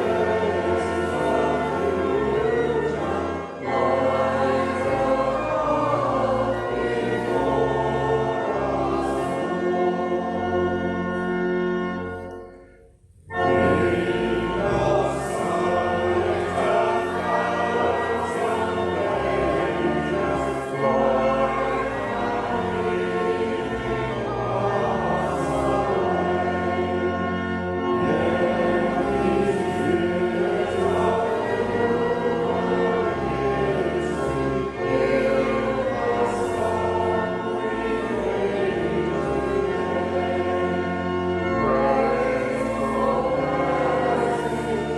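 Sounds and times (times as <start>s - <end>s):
choir singing a hymn: 0.0s - 12.5s, 13.3s - 44.9s.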